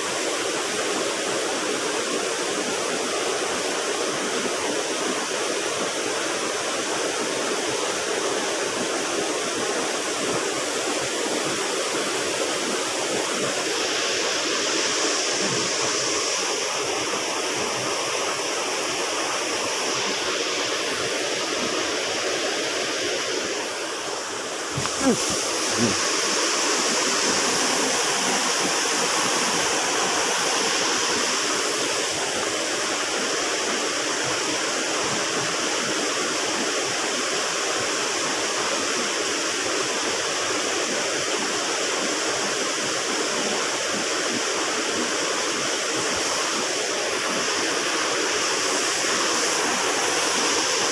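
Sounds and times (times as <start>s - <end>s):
river water rushing: 0.0s - 50.9s.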